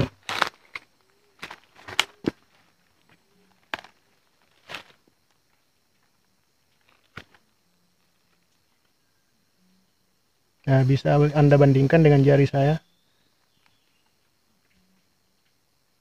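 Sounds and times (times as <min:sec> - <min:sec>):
footsteps on leaf litter: 0:03.7 - 0:05.0.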